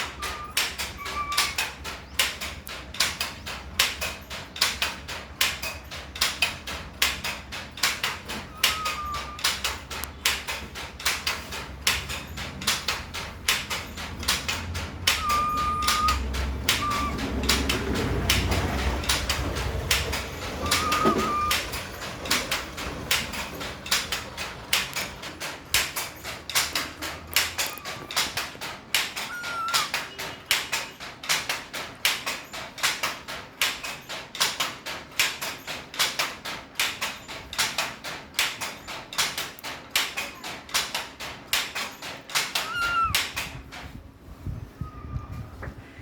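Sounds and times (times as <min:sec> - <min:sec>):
baby monkey squeaking: 0:00.0 - 0:01.8, 0:08.5 - 0:09.6, 0:15.0 - 0:17.7, 0:20.4 - 0:22.4, 0:27.4 - 0:28.4, 0:29.0 - 0:30.1, 0:42.5 - 0:43.4
rapid irregular clicking: 0:00.0 - 0:43.9.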